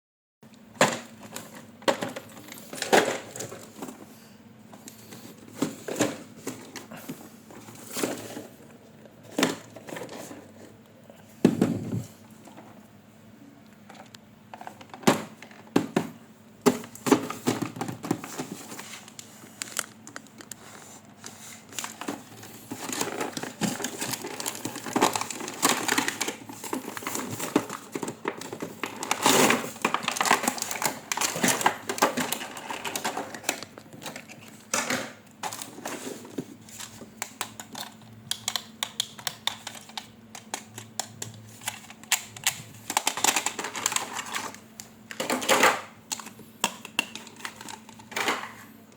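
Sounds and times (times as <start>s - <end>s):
packaging crinkling: 16.8s - 48.2s.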